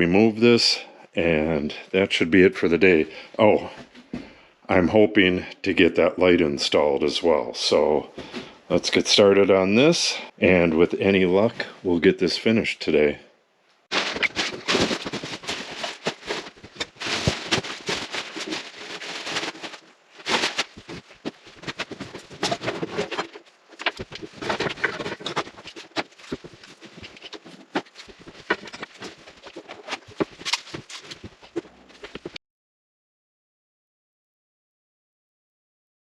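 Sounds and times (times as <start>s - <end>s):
tools and materials clattering: 13.9s - 32.4s.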